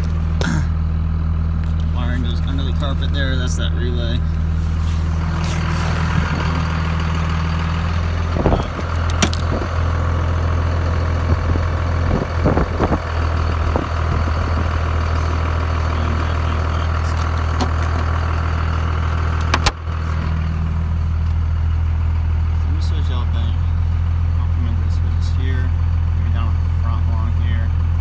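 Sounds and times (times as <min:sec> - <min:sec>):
diesel engine idling: 0:00.0 - 0:28.0
short knocks in cab: 0:19.4 - 0:19.8.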